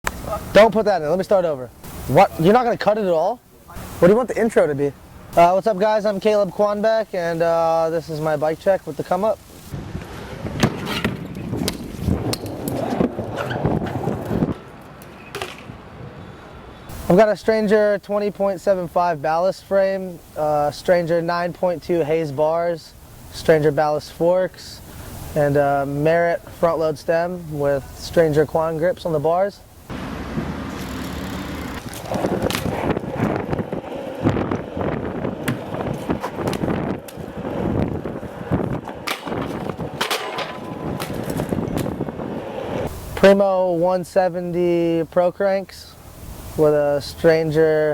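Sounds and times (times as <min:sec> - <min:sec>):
bike tyres rumbling on hard ground: 0:09.8 - 0:15.8, 0:30.2 - 0:43.2
steady low hum: 0:29.6 - 0:43.2.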